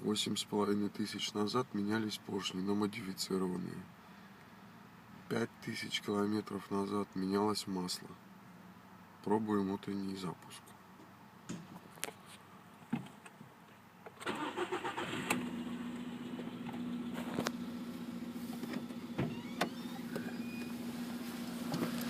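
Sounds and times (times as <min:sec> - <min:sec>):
starter motor cranking: 0:14.2 - 0:15.6
car engine idling with ticks: 0:15.3 - 0:19.2, 0:20.1 - 0:22.0.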